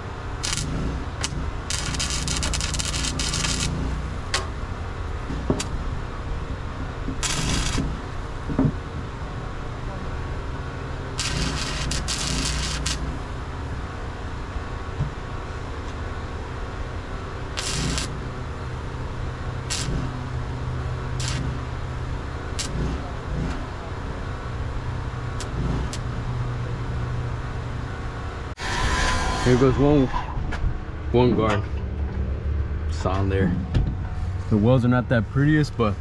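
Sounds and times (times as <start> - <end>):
engine humming: 0.0 - 36.0
short hissing bursts: 1.7 - 4.0, 7.2 - 7.9, 11.2 - 13.1, 17.6 - 18.2, 19.7 - 20.0, 21.2 - 21.5.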